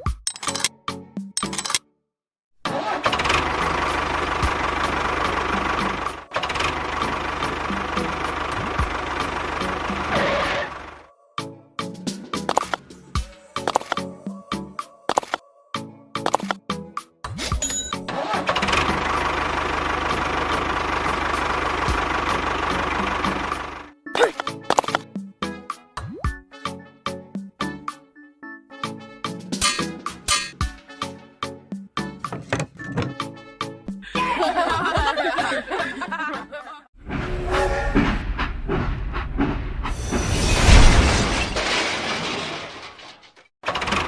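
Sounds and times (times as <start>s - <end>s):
tractor engine starting and running: 1.4s - 1.8s, 2.6s - 11.1s, 16.2s - 16.6s, 18.1s - 25.0s, 43.6s - 44.0s.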